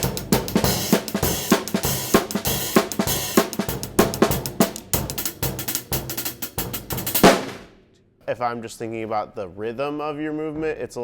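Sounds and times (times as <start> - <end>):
snare and kick drum strokes: 0.0 - 7.8.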